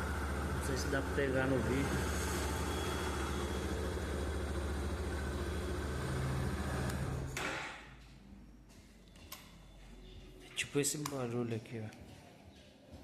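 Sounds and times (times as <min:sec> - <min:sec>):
motorcycle engine idling: 0:00.0 - 0:06.1.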